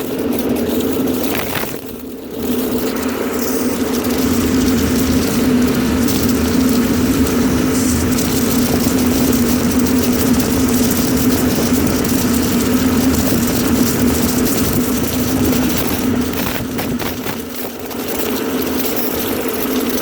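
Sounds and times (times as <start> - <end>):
power vacuum humming: 2.9 - 17.7.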